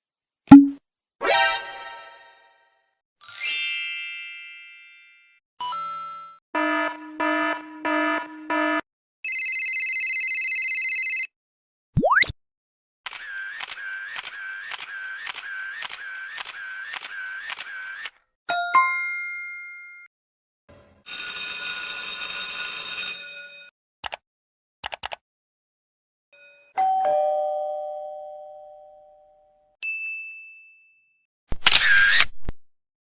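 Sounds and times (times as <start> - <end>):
high ding: 18.5 - 20.1
quick clicks: 24.8 - 25.2.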